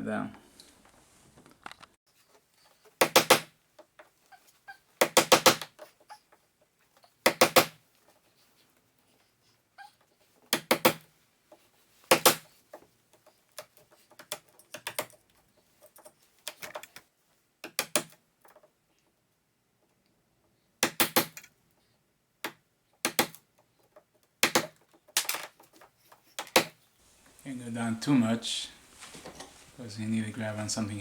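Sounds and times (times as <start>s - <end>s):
sharp knocks and clicks on metal: 3.0s - 3.5s, 5.0s - 5.8s, 7.2s - 7.8s, 10.5s - 11.0s, 12.1s - 12.4s, 17.6s - 18.6s, 20.8s - 21.5s, 22.4s - 23.4s, 24.4s - 25.5s, 26.4s - 26.8s.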